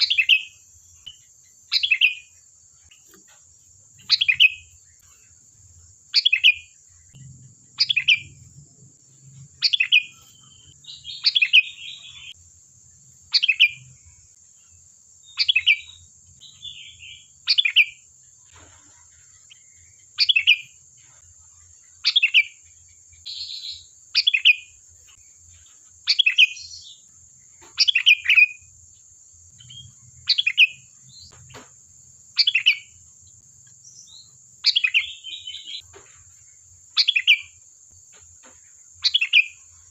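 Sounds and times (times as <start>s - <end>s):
bulbul calling: 0.0s - 2.4s, 4.0s - 4.8s, 6.1s - 8.4s, 9.6s - 12.4s, 13.3s - 13.9s, 15.3s - 18.0s, 20.2s - 20.8s, 26.1s - 27.0s, 27.6s - 28.7s, 29.6s - 31.6s, 32.4s - 33.0s, 33.9s - 35.9s, 37.0s - 37.6s, 39.0s - 39.6s
soft bird chattering: 0.0s - 3.2s, 4.0s - 4.7s, 6.1s - 6.8s, 7.8s - 8.4s, 9.6s - 12.4s, 13.3s - 13.9s, 15.3s - 20.8s, 27.6s - 28.6s, 32.4s - 33.0s, 34.6s - 35.9s, 37.0s - 37.6s.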